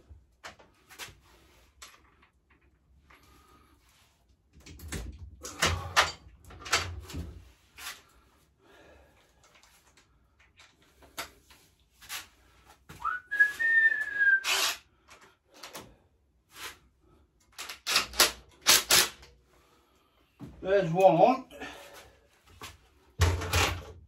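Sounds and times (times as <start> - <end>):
whistled tone: 13.0 - 14.7.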